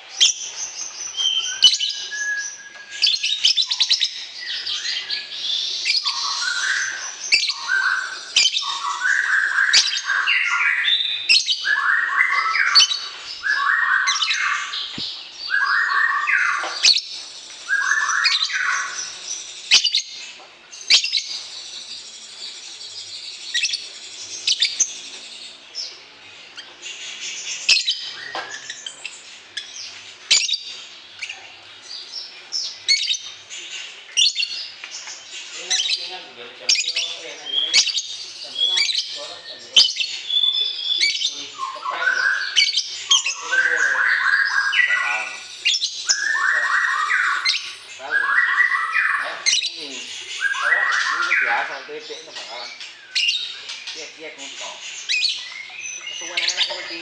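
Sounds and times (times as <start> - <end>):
songbirds chirping: 0.0 - 57.0
stepped bird song phrases: 0.0 - 57.0.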